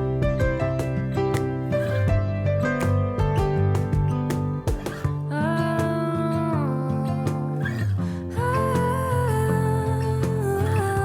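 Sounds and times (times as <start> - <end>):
song with plucked guitar: 0.0 - 11.0.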